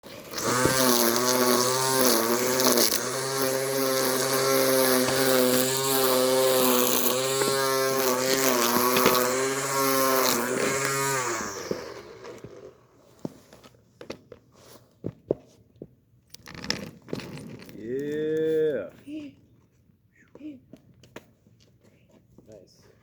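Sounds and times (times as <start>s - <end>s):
motor running: 0.0s - 12.7s.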